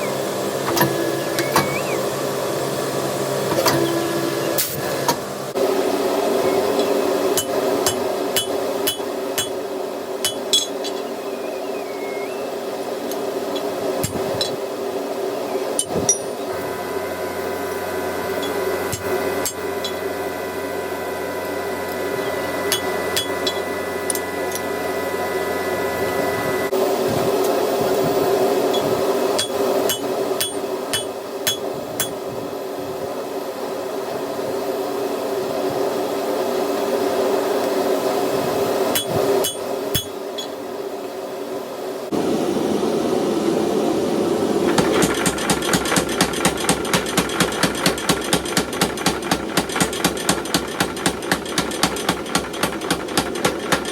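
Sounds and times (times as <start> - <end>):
steady rushing roar: 4.2 - 53.9
hammer ringing on hot steel: 7.4 - 9.6, 10.2 - 11.0, 22.7 - 24.2, 29.4 - 32.2, 38.9 - 40.6.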